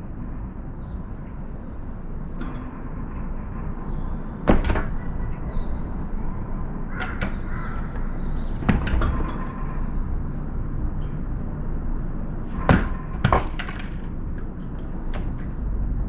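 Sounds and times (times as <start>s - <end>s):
sharp knocks: 4.4s - 5.7s, 6.9s - 9.7s, 12.5s - 14.4s.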